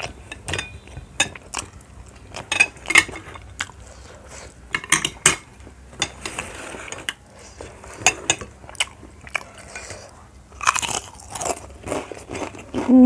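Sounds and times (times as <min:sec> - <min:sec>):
crunchy biting and chewing: 0:08.6 - 0:12.9.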